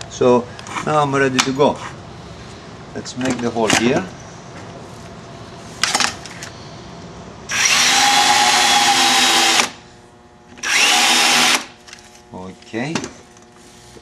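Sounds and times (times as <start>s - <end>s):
power drill boring into plastic: 7.5s - 9.8s, 10.6s - 11.7s.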